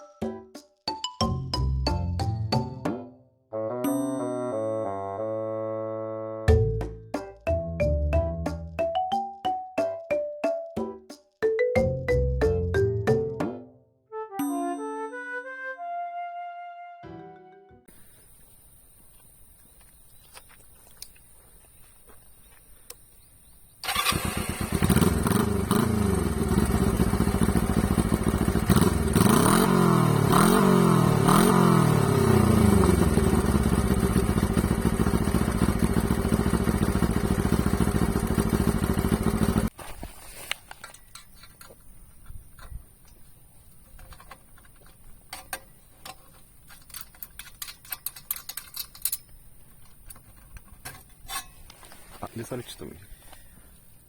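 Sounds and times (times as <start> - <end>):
motorcycle engine revving and idling: 23.8 - 39.7.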